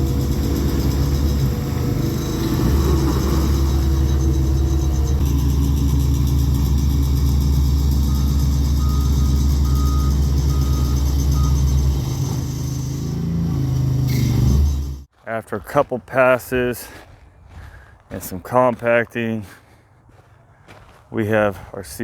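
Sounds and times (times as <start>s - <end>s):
backup alarm beeping: 0.0s - 15.0s
diesel excavator engine running: 0.0s - 15.1s.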